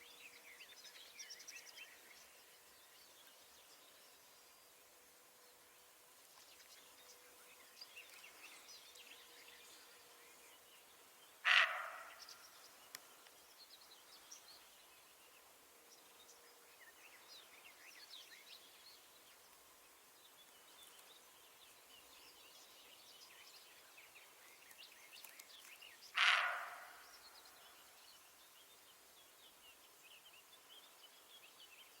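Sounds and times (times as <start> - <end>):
loud sharp animal calls: 11.4 - 12.2, 26.2 - 27.0.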